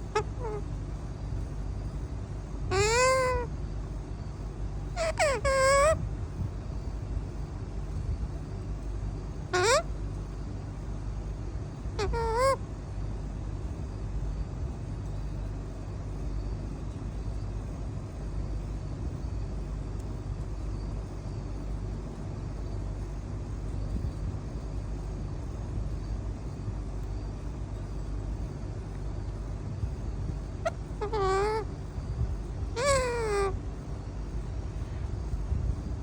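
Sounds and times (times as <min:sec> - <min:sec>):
parrot call: 0:00.0 - 0:00.7, 0:02.7 - 0:03.6, 0:04.9 - 0:06.0, 0:09.5 - 0:10.0, 0:11.9 - 0:12.7, 0:30.5 - 0:32.0, 0:32.6 - 0:33.6
low background rumble: 0:00.0 - 0:36.0.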